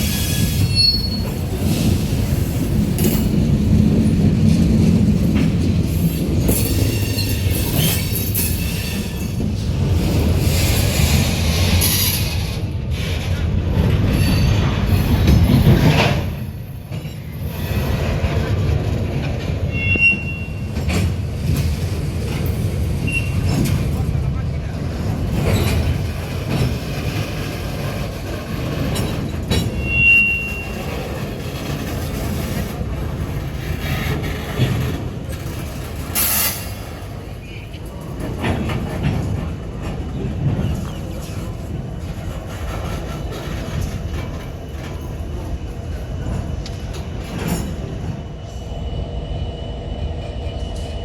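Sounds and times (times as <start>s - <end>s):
high wheel squeals: 0.0s - 1.4s, 19.7s - 20.7s, 23.0s - 23.5s, 29.7s - 31.0s
train wheels rumbling on rail: 0.0s - 51.0s.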